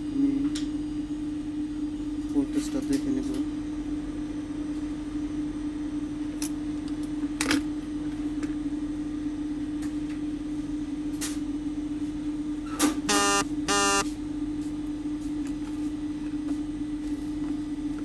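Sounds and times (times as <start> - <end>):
electrical hum: 13.0 - 14.2
short electronic beeps: 13.1 - 14.0.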